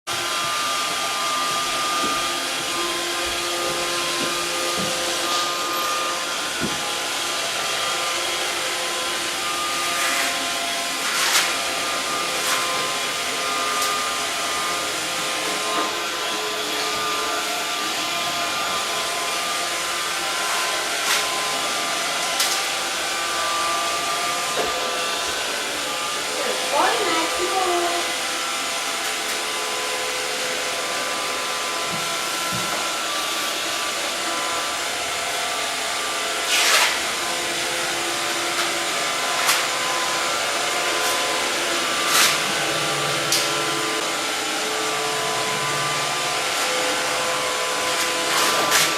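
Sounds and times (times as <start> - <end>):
robot vacuum whirring: 0.2 - 35.3.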